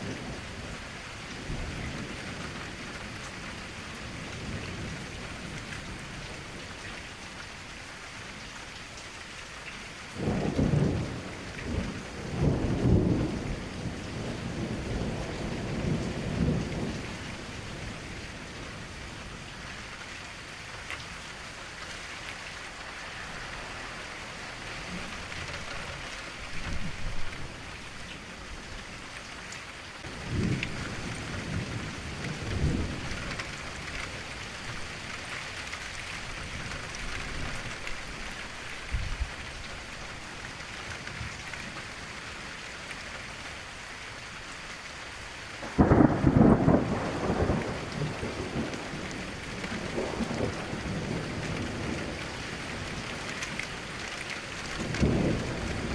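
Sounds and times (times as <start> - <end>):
steady rain: 0.0 - 55.9
loud thunder crack: 45.6 - 48.9
thunder rolling: 45.6 - 52.2.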